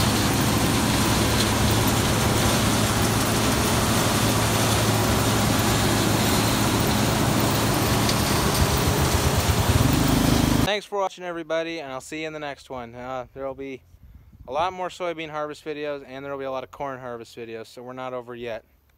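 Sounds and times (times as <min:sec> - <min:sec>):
farm machinery engine running: 0:00.0 - 0:10.7.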